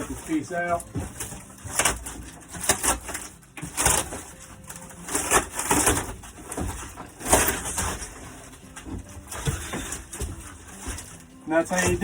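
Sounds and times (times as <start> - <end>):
roof material crunching and cracking: 0.0 - 12.0.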